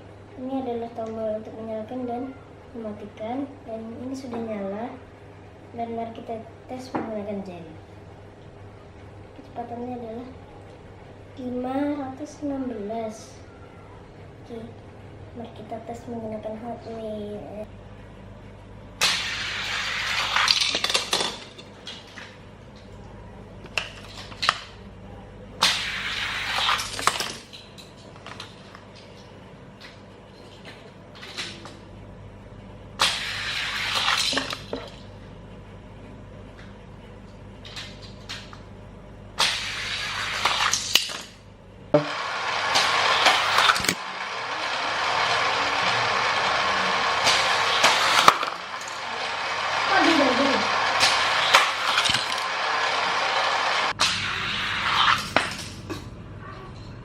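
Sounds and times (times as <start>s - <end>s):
toy car rattling on plastic track: 19.1s - 22.3s, 33.1s - 35.0s, 42.4s - 55.7s.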